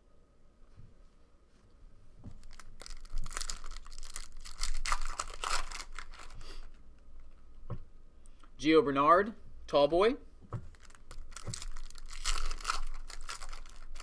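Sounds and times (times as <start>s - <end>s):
wrapper tearing and crinkling: 2.4s - 6.4s, 10.7s - 14.0s.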